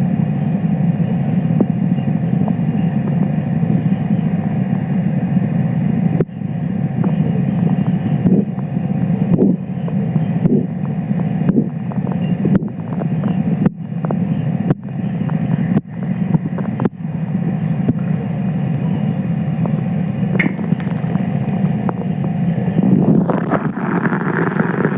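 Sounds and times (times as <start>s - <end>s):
steady low rumbling noise: 0.0s - 24.9s
rhythmic pulse beats: 19.6s - 24.9s.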